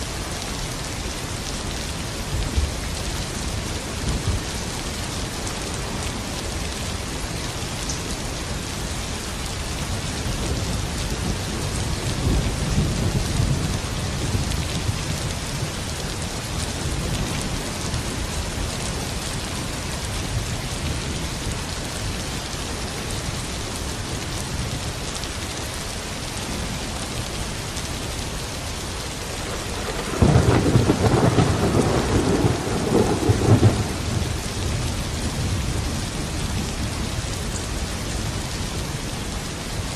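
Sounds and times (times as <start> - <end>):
heavy rain falling: 0.0 - 39.9
thunder rumbling: 29.3 - 36.9.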